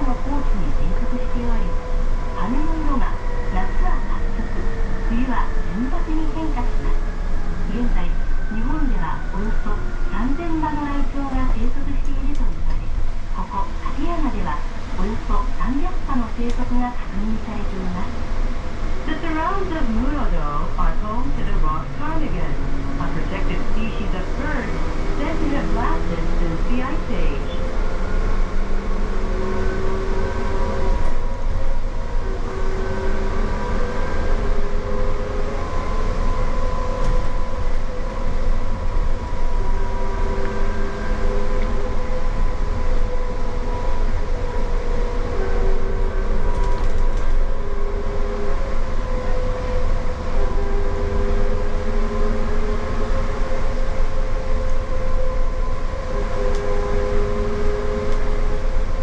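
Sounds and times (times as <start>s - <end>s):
low rumble: 0.0s - 59.0s.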